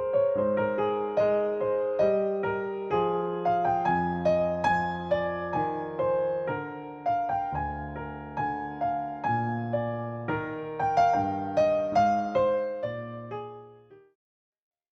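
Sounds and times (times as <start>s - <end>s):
gentle piano notes: 0.0s - 14.1s.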